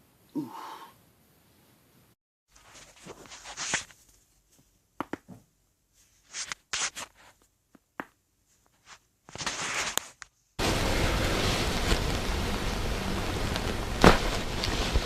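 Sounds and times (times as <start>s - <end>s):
clothing and table rustling: 1.4s - 7.6s, 8.4s - 10.5s.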